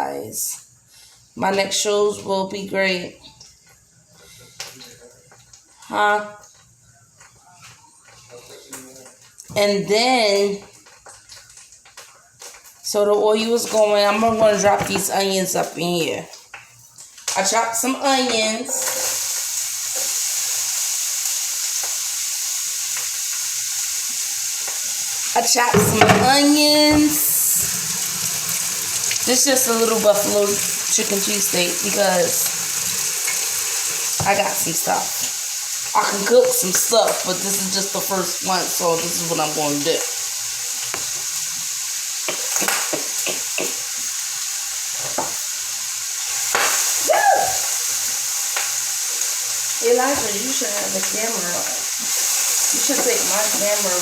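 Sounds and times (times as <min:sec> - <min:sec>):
onions sizzling in oil: 0:17.1 - 0:54.0.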